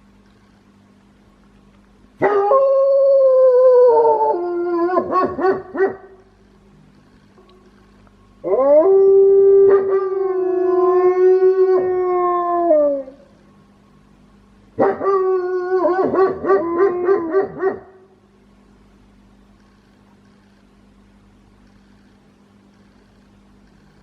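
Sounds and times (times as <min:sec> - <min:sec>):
dog howling: 0:02.2 - 0:06.0, 0:08.4 - 0:13.4, 0:14.8 - 0:18.0.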